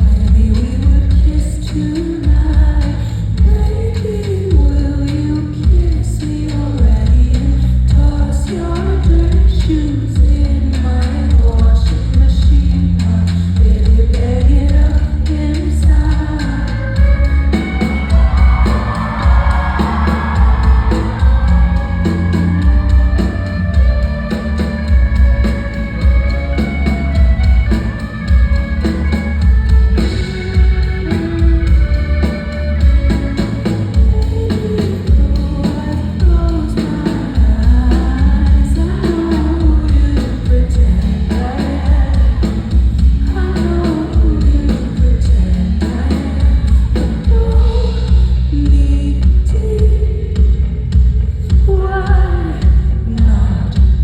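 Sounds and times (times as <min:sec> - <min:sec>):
woman singing: 0:00.0 - 0:54.0
live rock band playing: 0:16.7 - 0:47.7.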